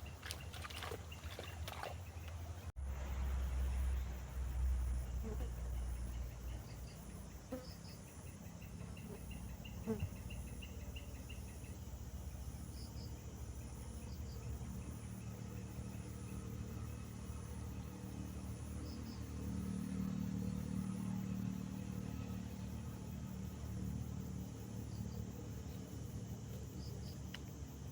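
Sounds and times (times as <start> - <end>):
insects chirping: 0.0 - 27.9.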